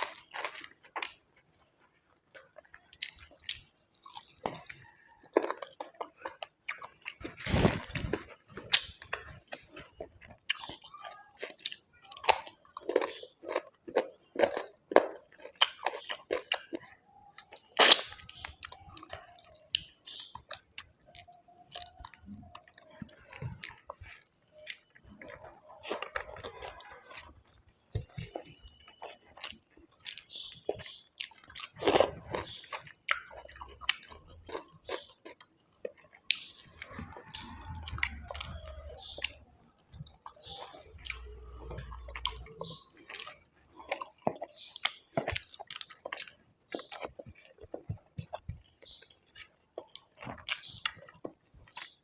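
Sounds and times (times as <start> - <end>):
person chewing food: 0.0 - 52.0.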